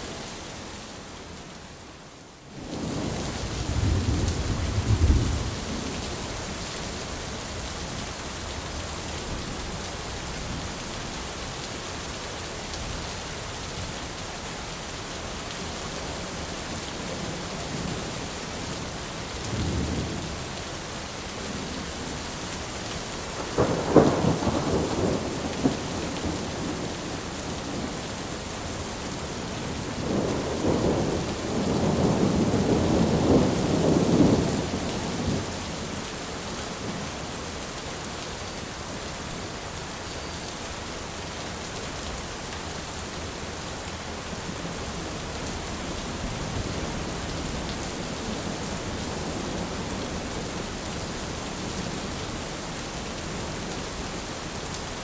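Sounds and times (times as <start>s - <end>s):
steady rain: 0.0s - 55.0s
thunder rumbling: 2.7s - 6.0s, 23.4s - 28.1s, 29.4s - 35.5s
crackling thunder peal: 23.4s - 26.9s.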